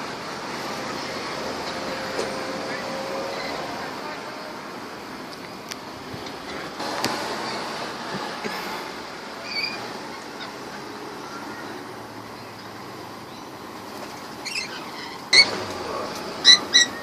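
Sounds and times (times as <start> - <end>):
steady background noise: 0.0 - 17.0
bird high-pitched calls: 9.4 - 11.8, 14.2 - 15.6, 16.4 - 17.0.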